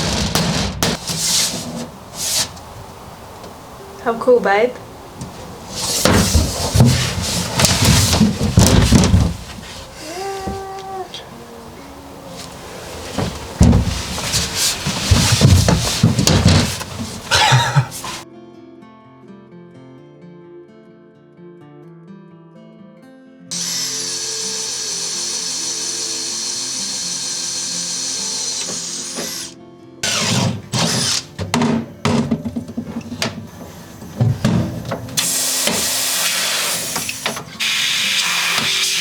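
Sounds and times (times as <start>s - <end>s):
acoustic guitar music: 0.0s - 23.6s, 29.6s - 39.0s
power drill whining: 23.5s - 31.4s, 35.2s - 39.0s.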